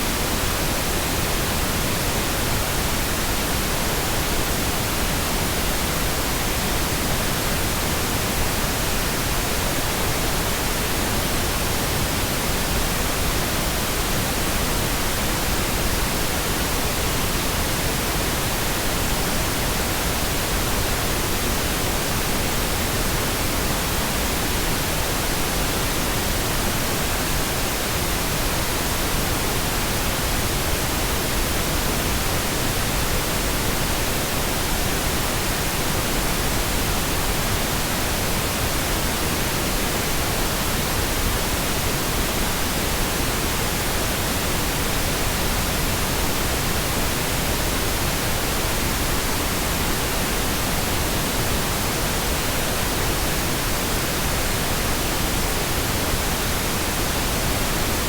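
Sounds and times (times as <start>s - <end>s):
pink noise hiss: 0.0s - 58.0s.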